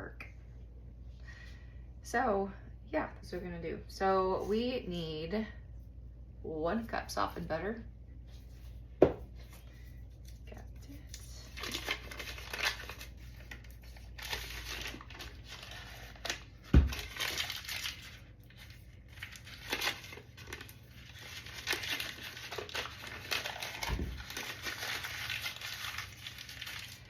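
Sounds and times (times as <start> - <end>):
dull thumps: 9.0 - 9.4
food packaging crinkling and tearing: 9.5 - 27.0.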